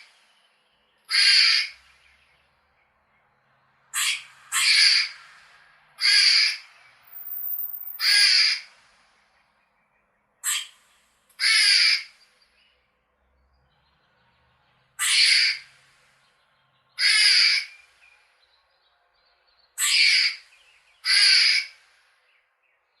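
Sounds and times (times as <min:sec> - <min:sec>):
squirrel giving harsh calls: 0:01.1 - 0:01.8, 0:03.9 - 0:05.3, 0:06.0 - 0:08.7, 0:10.4 - 0:10.8, 0:11.4 - 0:12.2, 0:15.0 - 0:15.7, 0:17.0 - 0:17.7, 0:19.8 - 0:21.8.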